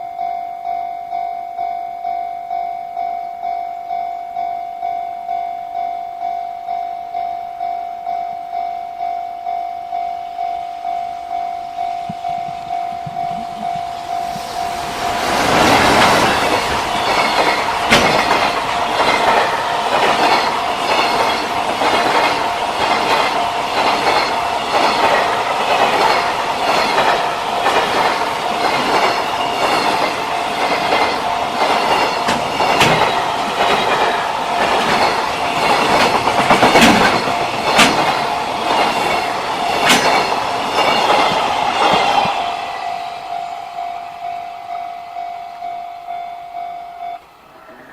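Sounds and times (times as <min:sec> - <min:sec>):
level crossing warning bell: 0:00.0 - 0:47.9
train wheels clattering over rail joints: 0:12.0 - 0:42.5.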